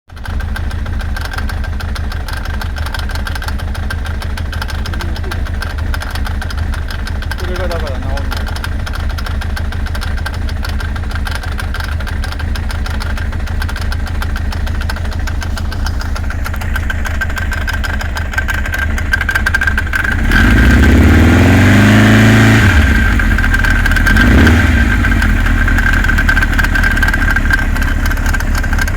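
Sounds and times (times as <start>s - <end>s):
motorcycle engine idling and revving: 0.0s - 28.9s
steady high whine: 15.3s - 21.0s.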